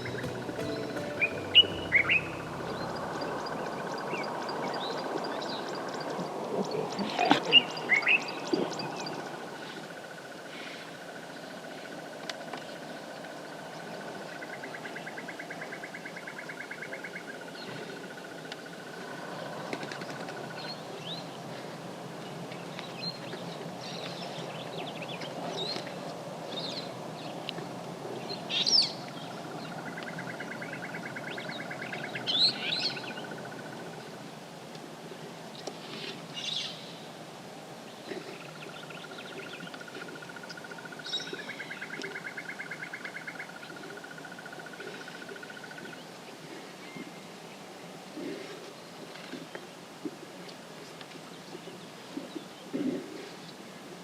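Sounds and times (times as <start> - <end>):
low background rumble: 0.0 - 4.8
bird pulsing trill: 0.0 - 6.2.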